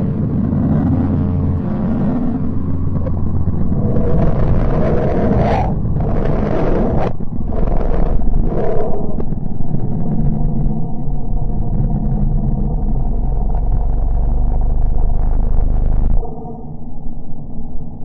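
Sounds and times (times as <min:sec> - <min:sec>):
deep space drone rumble: 0:00.0 - 0:18.0.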